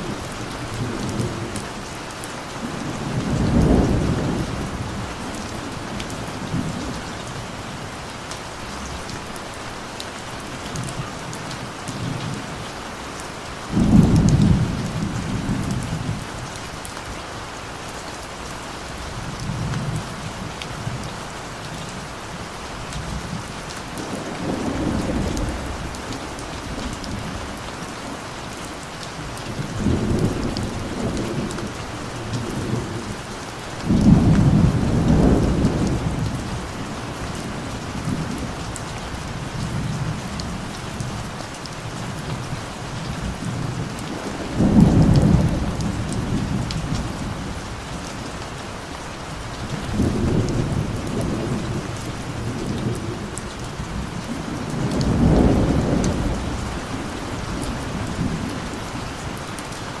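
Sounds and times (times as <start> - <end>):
steady rain falling: 0.0 - 60.0
thunder rumbling: 2.6 - 7.0, 33.8 - 38.6, 43.2 - 47.7, 49.8 - 59.3.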